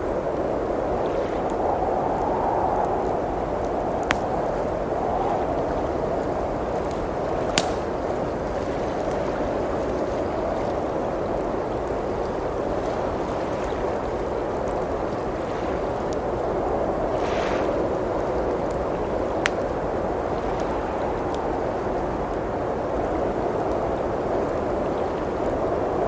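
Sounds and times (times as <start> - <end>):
blizzard wind blowing: 0.0 - 26.0
wood fire crackling: 1.4 - 9.2, 17.9 - 20.3.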